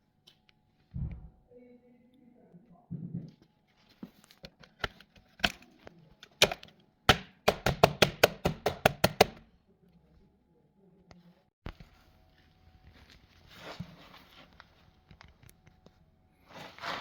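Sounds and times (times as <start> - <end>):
sharp clicks and knocks: 6.2 - 9.4.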